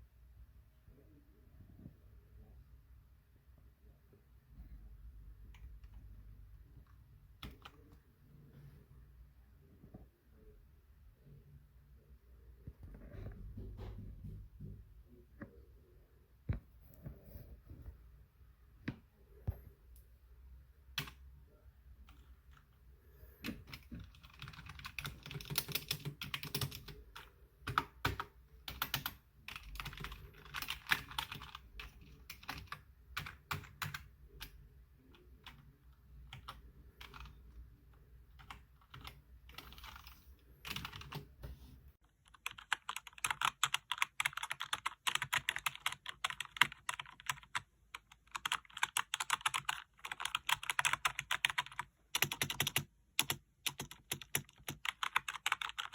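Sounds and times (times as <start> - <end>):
keyboard keys clicking: 23.4 - 34.6, 36.3 - 37.4, 38.4 - 41.3, 42.2 - 55.9.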